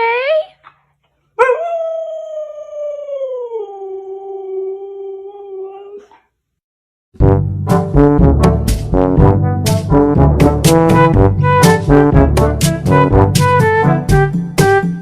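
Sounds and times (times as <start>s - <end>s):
loud brass music: 7.2s - 15.0s.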